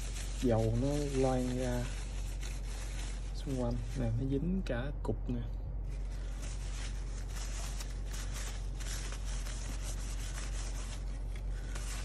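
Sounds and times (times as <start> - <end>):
hands scraping circuit board: 0.0 - 4.1
steady low hum: 0.0 - 12.0.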